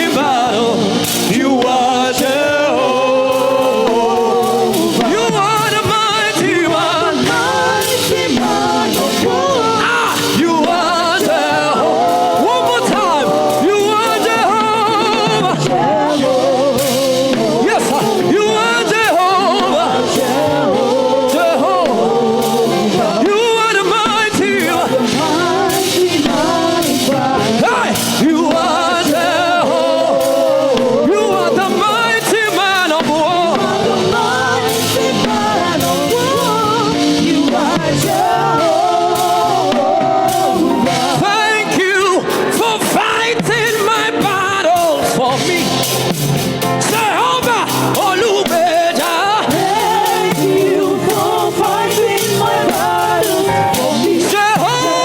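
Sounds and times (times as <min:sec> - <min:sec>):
drum hits: 0:00.0 - 0:55.0
live gospel band: 0:00.0 - 0:55.0
person singing lead: 0:00.0 - 0:55.0.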